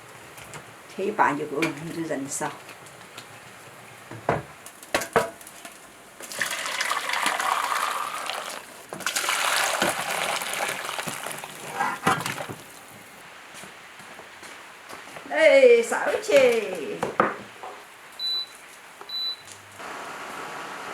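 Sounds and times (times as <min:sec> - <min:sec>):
water running into a basin: 0:06.2 - 0:13.2.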